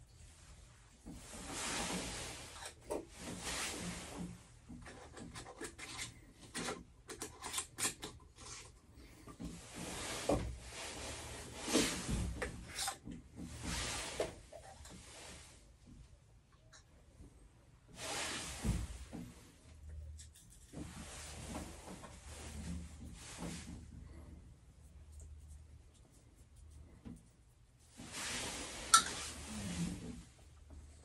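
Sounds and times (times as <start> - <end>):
rubbing and scraping on pipe: 0.8 - 15.6, 17.9 - 31.0.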